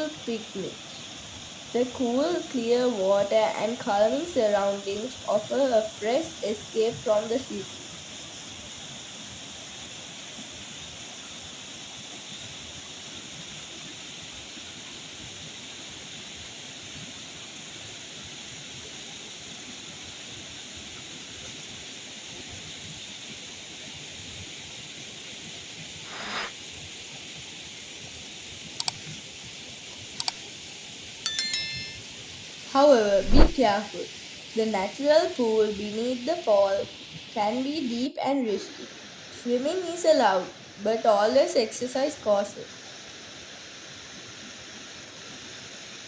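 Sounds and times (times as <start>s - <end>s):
small waterfall rushing: 5.9s - 25.8s, 42.2s - 46.0s.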